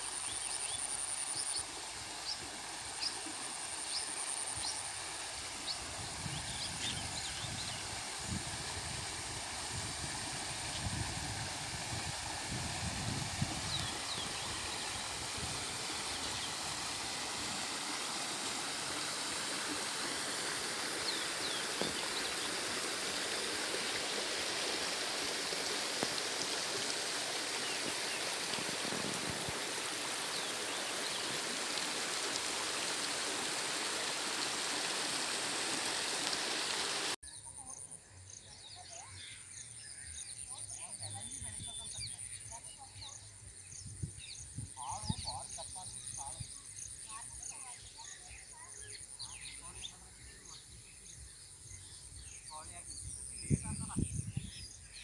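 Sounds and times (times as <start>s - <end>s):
flowing water rushing: 0.0s - 37.2s
steady outdoor hiss: 0.0s - 55.0s.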